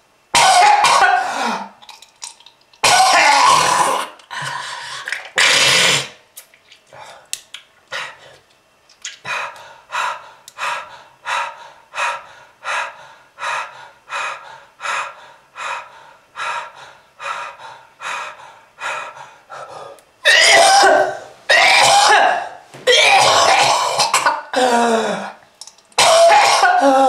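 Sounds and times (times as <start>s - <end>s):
person coughing loudly: 0.4s - 1.8s, 2.8s - 4.2s, 20.2s - 25.4s, 26.0s - 27.0s
person gasping breaths: 4.3s - 5.2s, 9.3s - 20.0s.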